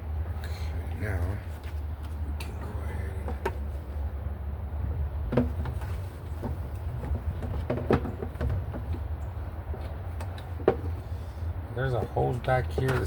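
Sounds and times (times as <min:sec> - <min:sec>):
steady low rumble: 0:00.0 - 0:12.5.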